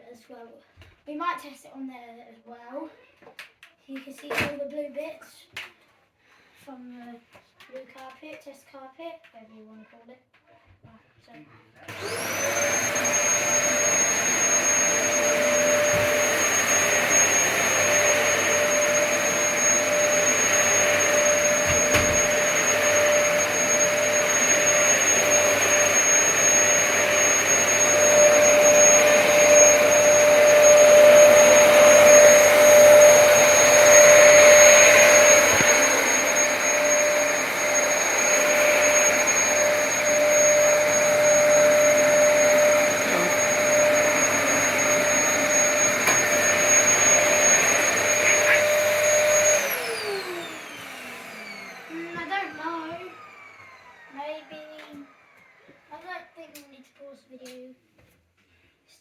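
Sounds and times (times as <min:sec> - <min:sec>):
vacuum cleaner running: 0:11.8 - 0:56.6.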